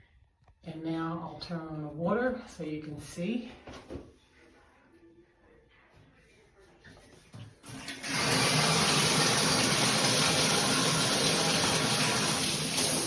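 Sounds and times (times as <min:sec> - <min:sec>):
shower spray hissing: 0:07.7 - 0:13.0.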